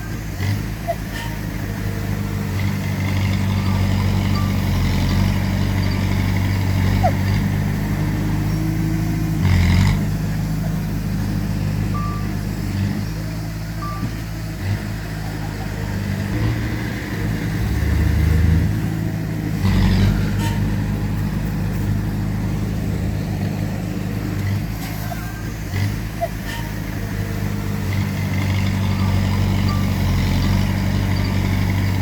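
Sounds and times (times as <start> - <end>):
heavy diesel engines running: 0.0 - 32.0
short high beeps: 11.9 - 12.4, 13.8 - 14.2.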